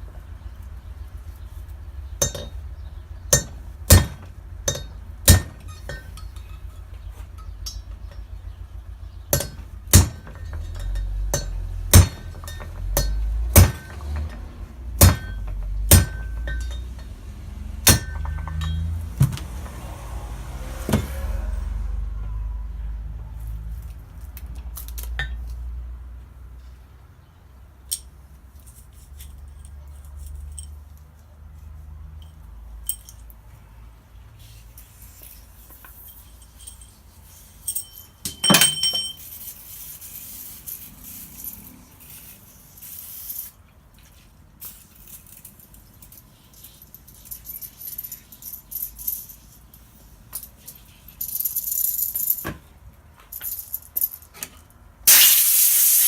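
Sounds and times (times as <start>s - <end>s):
metal parts clinking and rattling: 2.2s - 19.4s, 27.9s - 31.3s, 32.2s - 33.5s, 34.4s - 56.0s.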